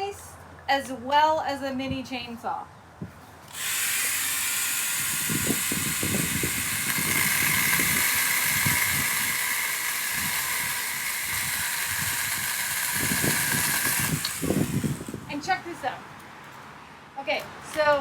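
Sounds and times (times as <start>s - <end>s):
electric pruner motor whine: 3.5s - 15.3s.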